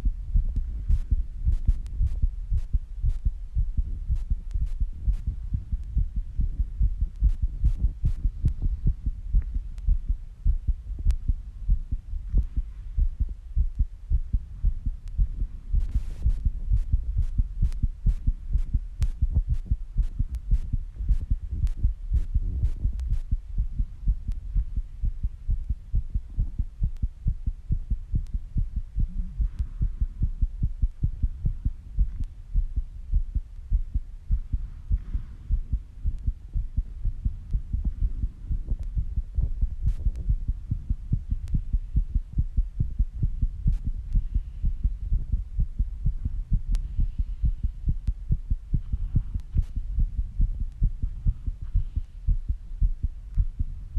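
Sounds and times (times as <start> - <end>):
fast heartbeat thumps: 0.0 - 53.9
faint clicks: 9.4 - 10.0, 15.0 - 15.2, 49.3 - 49.8.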